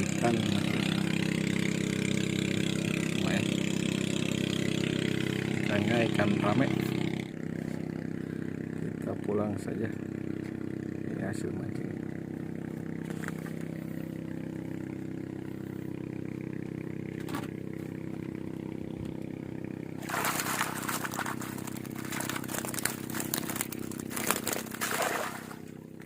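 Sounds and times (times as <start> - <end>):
low engine drone: 0.0 - 26.0
crackling rustling handling noise: 20.0 - 25.4.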